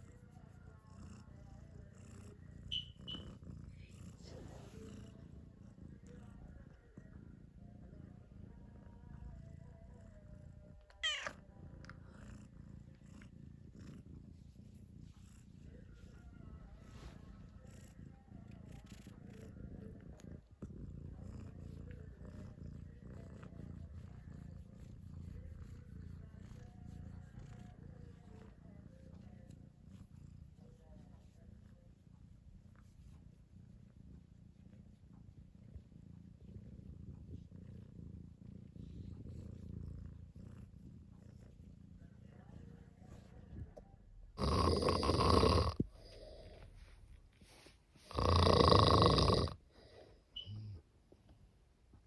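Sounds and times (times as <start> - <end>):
cat snoring low rumble: 0.0 - 50.9
cat snoring: 35.1 - 50.8.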